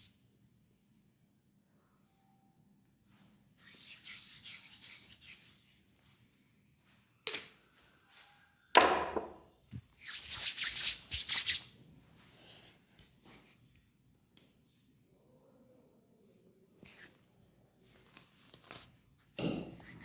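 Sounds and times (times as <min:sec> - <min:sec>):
hands rubbing a leg: 0:03.6 - 0:05.8
sharp knock: 0:08.8 - 0:09.4.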